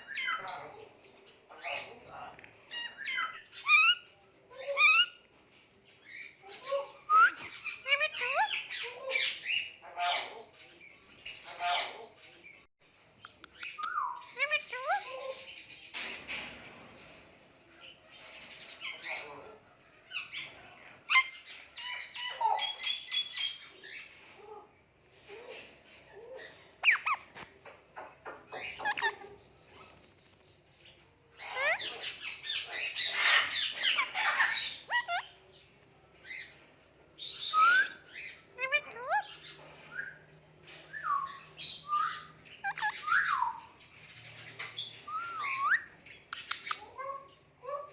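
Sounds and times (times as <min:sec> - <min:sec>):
parakeet chirping and squawking: 0:00.0 - 0:05.2, 0:06.1 - 0:12.2, 0:14.0 - 0:17.1, 0:18.1 - 0:24.5, 0:25.1 - 0:47.9
parrot harsh squawks: 0:06.6 - 0:10.4, 0:31.4 - 0:35.2.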